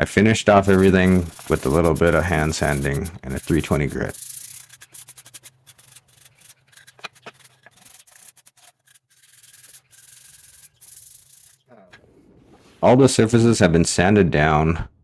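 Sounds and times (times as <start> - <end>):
sandpaper rubbing on wood: 0.5 - 11.7.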